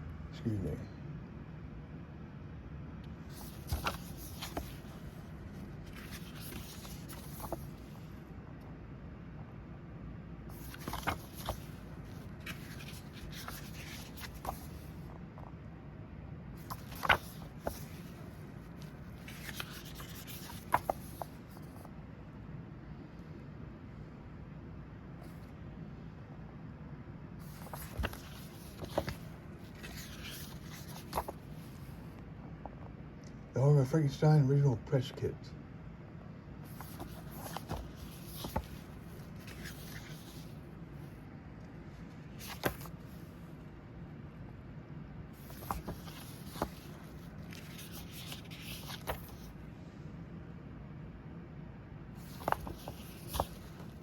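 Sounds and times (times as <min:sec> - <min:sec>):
faint background hum: 0:00.0 - 0:54.0
paper and card rustling: 0:03.2 - 0:08.2, 0:10.5 - 0:15.5, 0:16.6 - 0:21.9, 0:27.4 - 0:32.2, 0:36.6 - 0:43.6, 0:45.3 - 0:49.7, 0:52.2 - 0:54.0.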